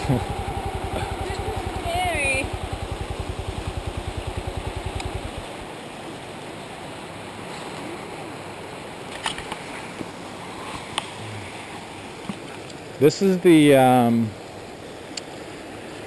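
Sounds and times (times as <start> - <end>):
motorcycle engine idling: 0.0 - 5.7
river water rushing: 0.0 - 16.0.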